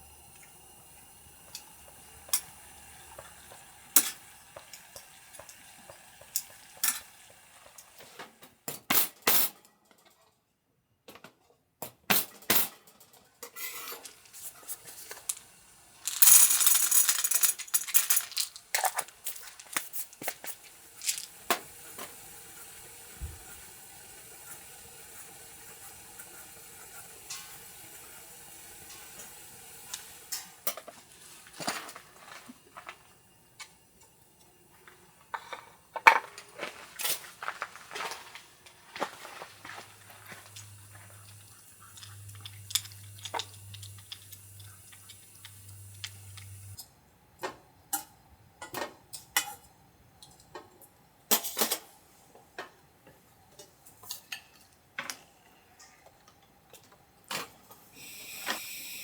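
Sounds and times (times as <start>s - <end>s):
camp cookware clinking: 1.4s - 7.9s, 12.3s - 22.2s, 27.1s - 28.2s, 39.0s - 49.7s.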